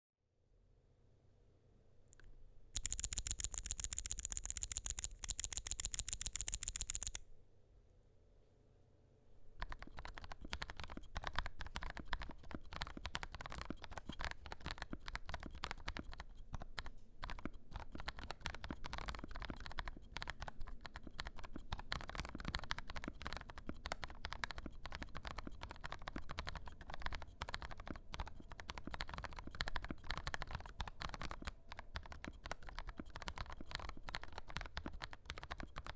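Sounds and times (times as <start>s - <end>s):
rapid sharp clicks: 2.8s - 7.2s
typing on mechanical keyboard: 2.8s - 7.2s, 9.6s - 35.9s.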